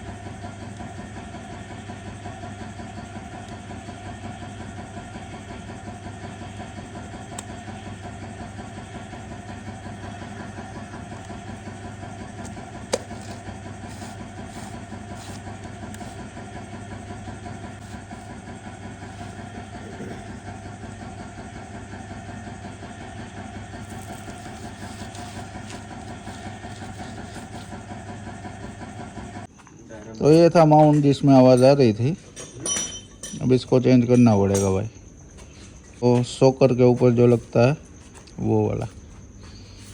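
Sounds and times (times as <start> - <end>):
car engine idling: 9.2 - 21.0.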